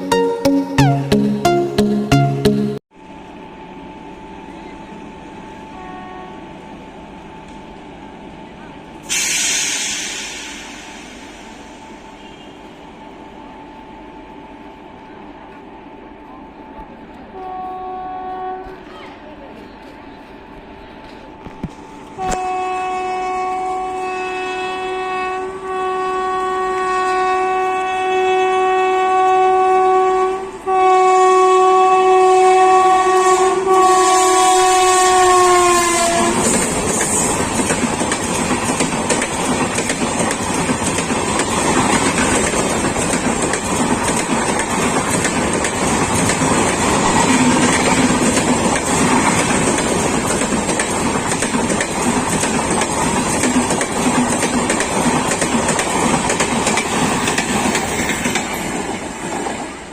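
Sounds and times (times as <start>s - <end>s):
locomotive air horn blast: 5.7s - 6.5s, 17.4s - 18.8s, 22.2s - 36.8s
train wheels clattering on rails: 36.0s - 59.8s.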